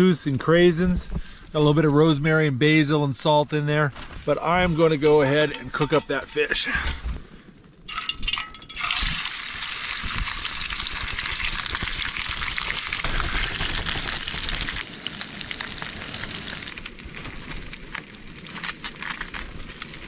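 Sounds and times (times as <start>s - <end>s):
fish sizzling in hot oil: 7.9s - 20.0s.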